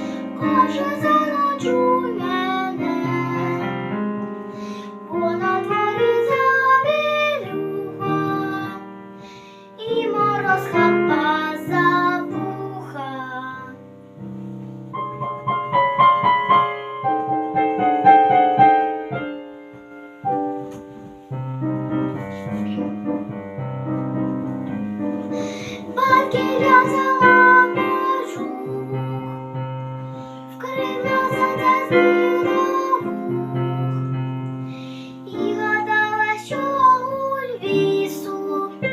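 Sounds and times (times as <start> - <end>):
girl singing: 0.0 - 13.9, 25.3 - 38.9
piano accompaniment: 0.0 - 38.9.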